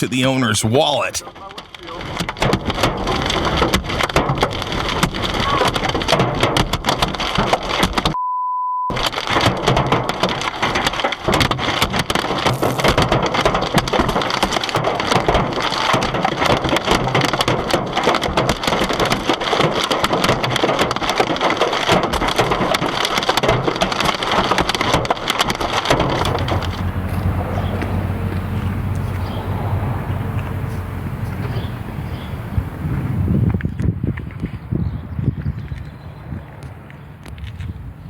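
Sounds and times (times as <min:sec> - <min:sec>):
hail pelting a car: 0:26.0 - 0:32.9.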